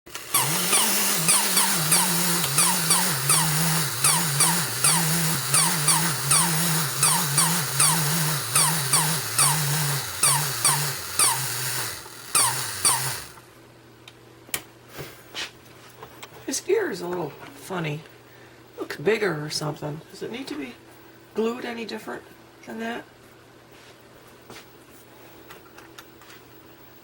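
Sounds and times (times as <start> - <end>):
wind-up toy whirring and clicking: 0.1 - 13.4.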